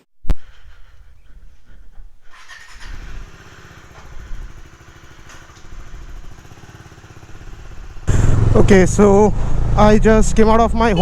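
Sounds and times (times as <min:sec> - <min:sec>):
motorcycle engine running: 0:02.2 - 0:11.0.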